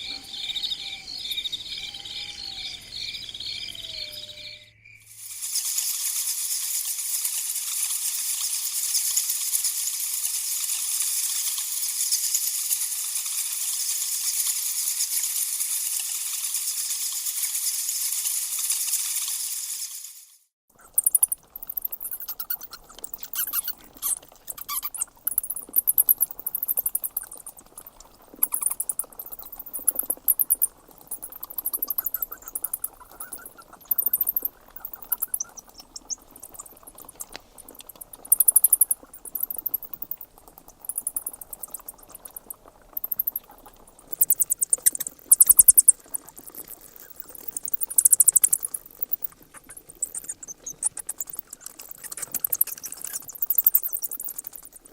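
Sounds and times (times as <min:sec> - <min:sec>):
bats squeaking and chittering: 0:00.0 - 0:05.8, 0:20.8 - 0:54.9
faint hiss: 0:05.0 - 0:15.4.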